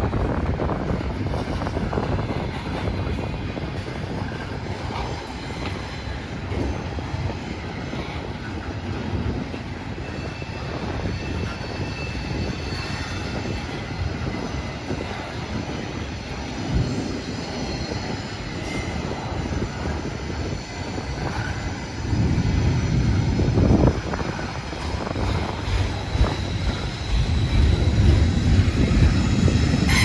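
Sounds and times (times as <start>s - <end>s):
train wheels rumbling on rails: 0.0s - 30.0s.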